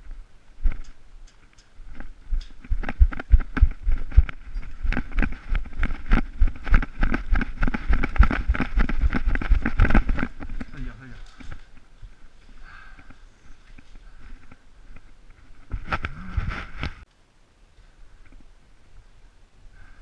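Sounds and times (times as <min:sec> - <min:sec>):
gear rustling: 0:00.1 - 0:17.0
heavy running footsteps: 0:01.8 - 0:12.2.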